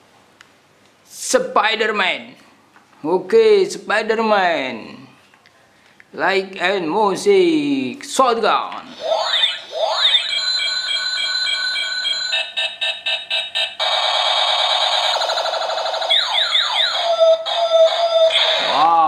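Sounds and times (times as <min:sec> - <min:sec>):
falling electronic sweeps: 0:08.9 - 0:12.5
toy gun electronic zaps: 0:08.9 - 0:19.0
warbling alarm-like tone: 0:08.9 - 0:19.0.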